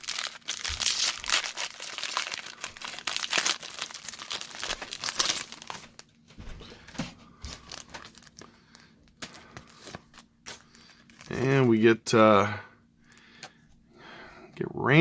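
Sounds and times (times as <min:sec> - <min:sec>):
wrapper crinkling and tearing: 0:00.0 - 0:06.2, 0:06.9 - 0:11.8.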